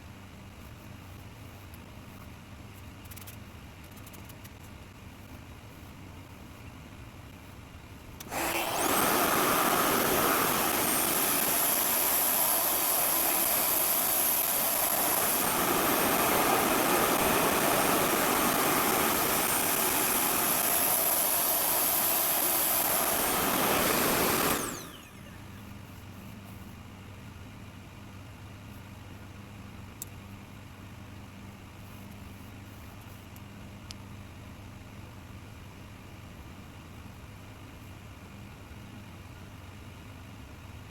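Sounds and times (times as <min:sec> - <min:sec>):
hair dryer rushing air: 0:08.2 - 0:25.3.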